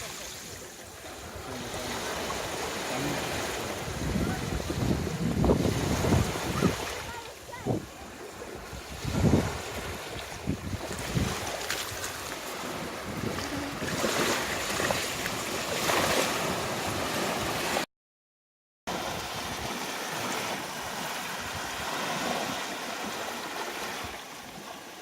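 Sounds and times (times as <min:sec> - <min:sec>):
sea waves washing on shore: 0:00.0 - 0:17.9, 0:18.9 - 0:25.0
wind buffeting microphone: 0:03.5 - 0:17.8.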